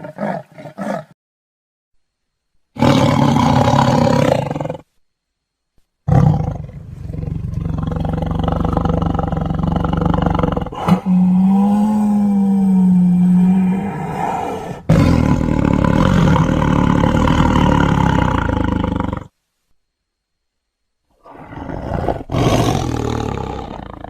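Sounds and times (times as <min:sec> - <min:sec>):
big cat roaring: 0:02.8 - 0:04.8, 0:06.1 - 0:19.3, 0:21.2 - 0:24.0
steady low-pitched animal call: 0:06.0 - 0:19.4, 0:21.1 - 0:24.0
low rumbling growl: 0:06.1 - 0:19.3, 0:21.2 - 0:24.0.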